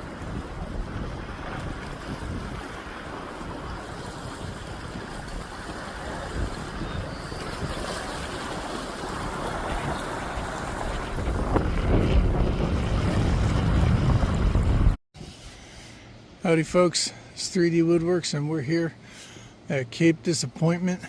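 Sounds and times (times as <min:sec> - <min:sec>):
wind buffeting microphone: 0:00.0 - 0:15.0
steady rushing noise: 0:00.0 - 0:15.6.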